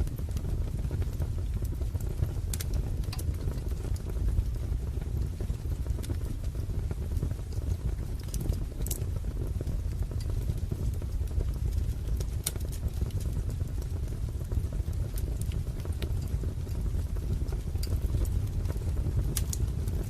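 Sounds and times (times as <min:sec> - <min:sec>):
fire crackling and popping: 0:00.0 - 0:20.0.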